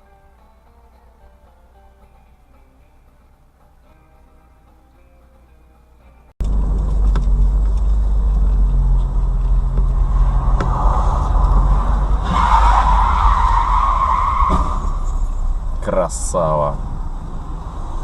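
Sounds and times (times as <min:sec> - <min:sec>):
car engine and road rumble: 0:05.4 - 0:18.0.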